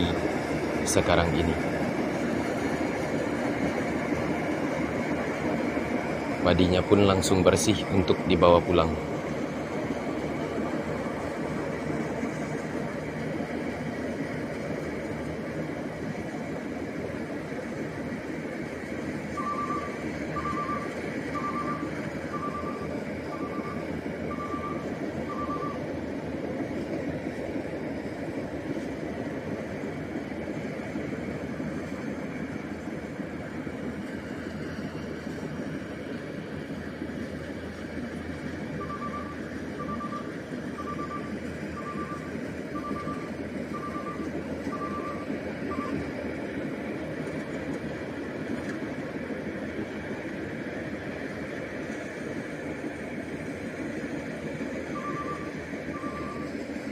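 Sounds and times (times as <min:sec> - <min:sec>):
combine harvester running: 0:00.0 - 0:56.9
warning beeper beeping: 0:19.4 - 0:25.9, 0:38.8 - 0:46.1, 0:54.9 - 0:56.6.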